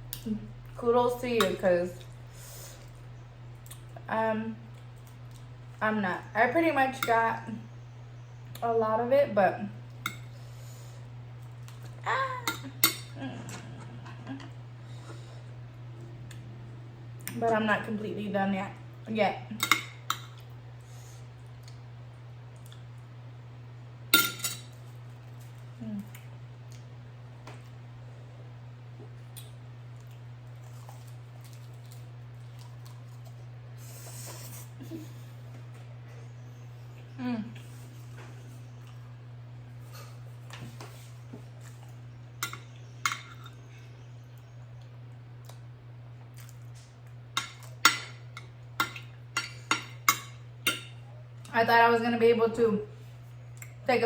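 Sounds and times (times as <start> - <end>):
steady low hum: 0.0 - 54.0
utensil clinking on a dish: 24.2 - 24.8.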